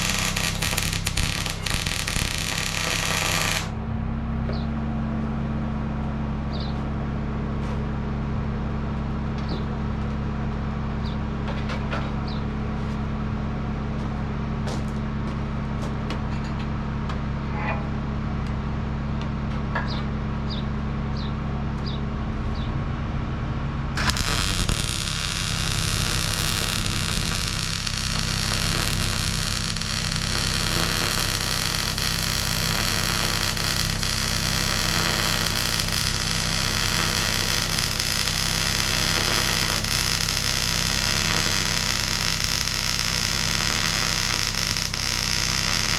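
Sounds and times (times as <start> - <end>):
welding arc crackling hiss: 0.0 - 3.7, 24.0 - 45.9
welding machine humming: 0.0 - 3.8, 24.0 - 45.9.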